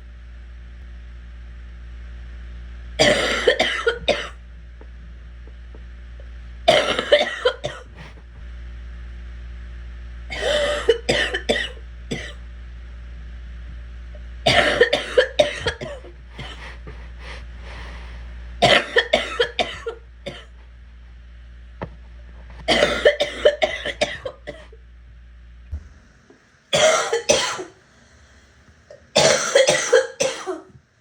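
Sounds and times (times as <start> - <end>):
person coughing: 3.0 - 4.4, 6.7 - 8.2, 10.3 - 12.4, 14.5 - 17.4, 18.6 - 20.5, 22.7 - 24.8, 26.7 - 27.8, 28.9 - 30.8.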